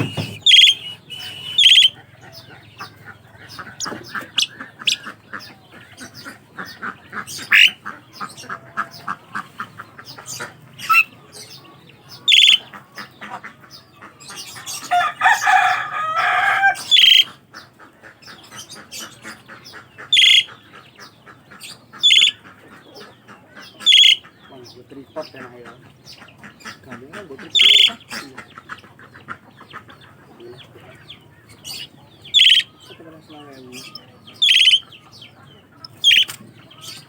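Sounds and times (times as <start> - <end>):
harsh chattering burst: 0.0 - 1.9, 34.4 - 34.8, 35.8 - 36.4
starlings calling: 0.0 - 37.0.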